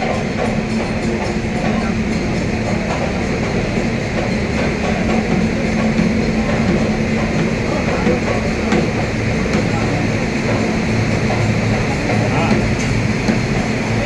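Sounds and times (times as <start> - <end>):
train rumbling: 0.0 - 14.0.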